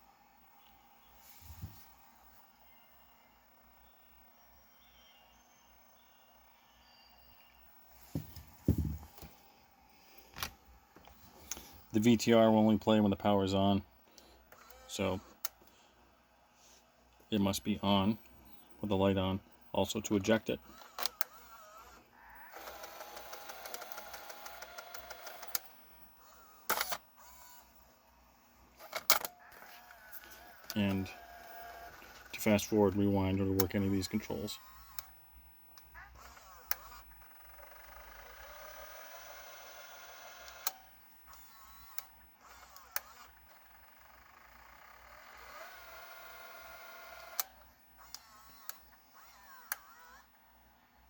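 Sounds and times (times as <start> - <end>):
camcorder tape eject whirring: 14.1 - 15.8, 20.6 - 27.8, 28.8 - 50.5.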